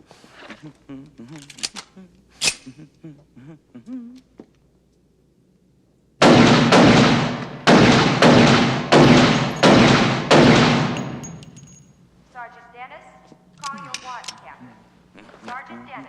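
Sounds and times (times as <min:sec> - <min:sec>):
gunshots echoing: 0:06.2 - 0:11.6.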